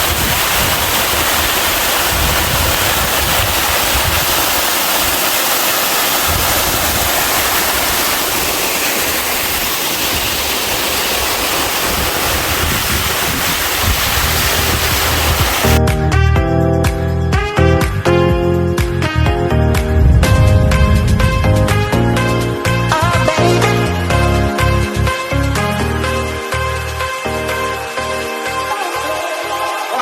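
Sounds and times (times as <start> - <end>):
wind rumble on microphone: 0.0 - 4.6, 6.2 - 8.0, 11.7 - 15.8, 19.8 - 22.5
waterfall rushing: 0.0 - 15.8.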